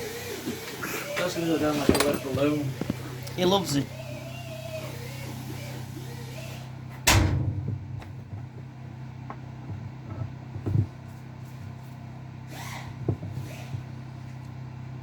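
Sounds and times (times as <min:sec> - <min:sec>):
steady low hum: 0:00.0 - 0:15.0
tools being handled clunking: 0:01.2 - 0:03.0.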